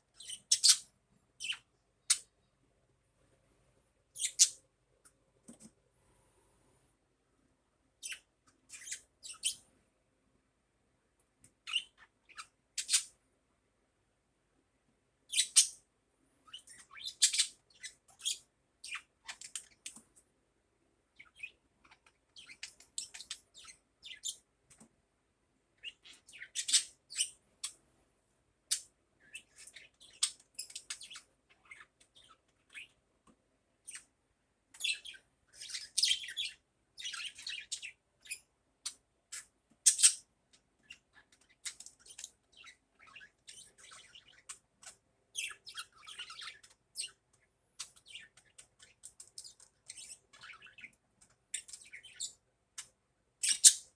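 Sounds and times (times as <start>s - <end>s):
budgerigar chirping and chattering: 0.2s - 2.3s, 4.2s - 4.6s, 8.0s - 9.6s, 11.7s - 13.1s, 15.3s - 15.8s, 16.5s - 19.8s, 25.8s - 27.4s, 34.8s - 40.2s, 45.4s - 47.2s, 53.4s - 53.9s.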